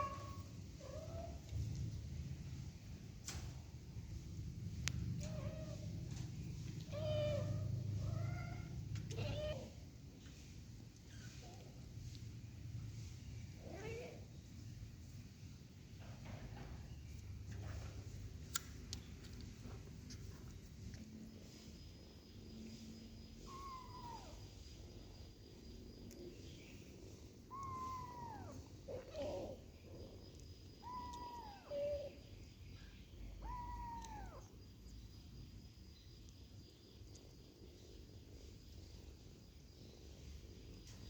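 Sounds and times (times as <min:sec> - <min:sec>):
kitten meowing: 0:23.5 - 0:24.4, 0:27.5 - 0:29.6, 0:33.4 - 0:34.4.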